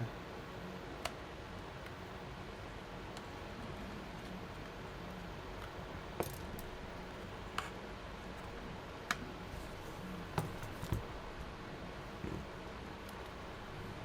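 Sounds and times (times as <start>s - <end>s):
low room hum: 0.0s - 14.0s
repair tools clicking and tapping: 6.2s - 6.8s.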